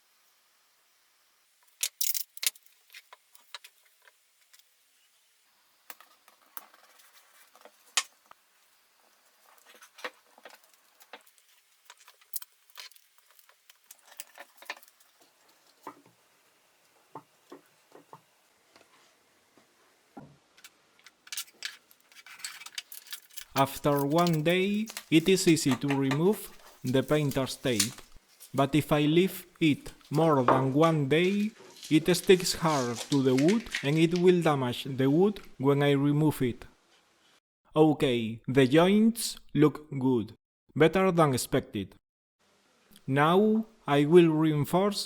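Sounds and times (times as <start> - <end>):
hands handling wooden rods and tape: 9.0 - 19.1, 20.6 - 34.3.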